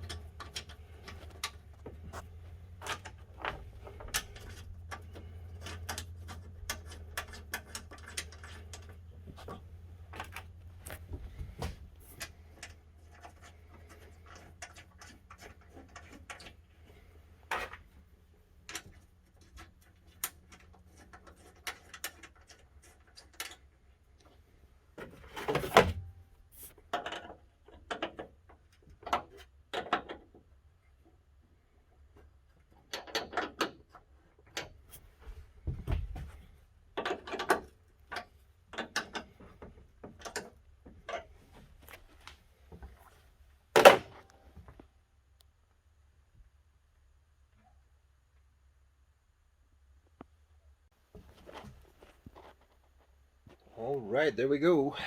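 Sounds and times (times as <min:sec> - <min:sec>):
metal clatter: 0:00.0 - 0:18.0.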